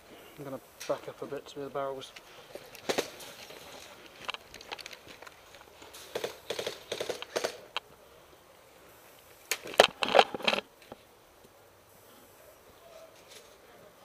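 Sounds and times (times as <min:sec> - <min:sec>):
crunching footsteps: 0:00.0 - 0:08.0, 0:09.0 - 0:13.7
gear rattling: 0:02.5 - 0:07.6.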